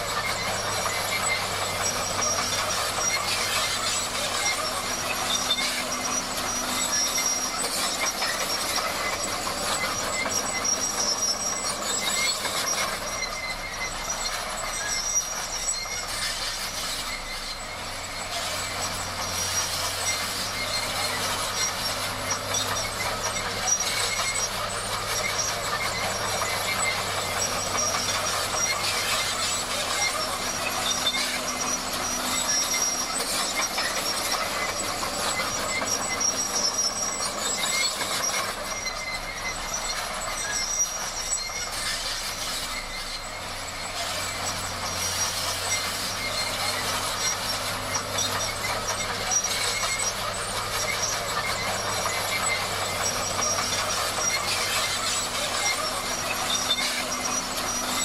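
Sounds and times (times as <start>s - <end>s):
diesel engine drone: 0.0s - 58.0s
steel tracks clanking and squealing: 0.0s - 58.0s.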